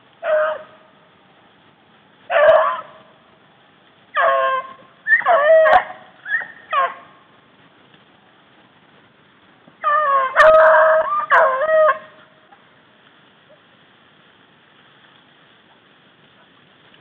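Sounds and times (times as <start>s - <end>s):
hounds baying: 2.3s - 3.0s, 4.2s - 7.1s, 9.8s - 12.2s.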